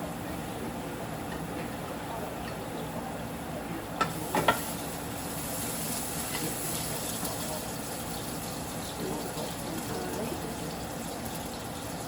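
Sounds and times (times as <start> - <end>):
food sizzling in hot oil: 4.0 - 12.0.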